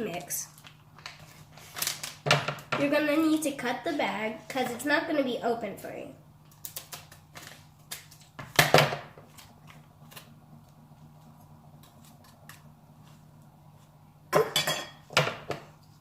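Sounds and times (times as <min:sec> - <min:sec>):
plastic crinkling: 0:00.4 - 0:02.3.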